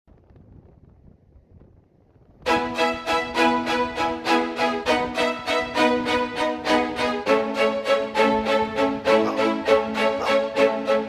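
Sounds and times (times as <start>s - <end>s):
wind buffeting microphone: 0.1s - 11.0s.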